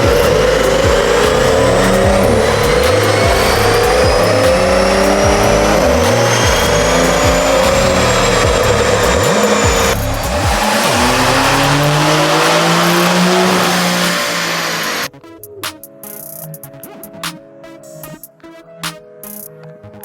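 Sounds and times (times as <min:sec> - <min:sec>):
car engine accelerating hard: 0:00.0 - 0:15.1
music with heavy bass: 0:00.0 - 0:19.5.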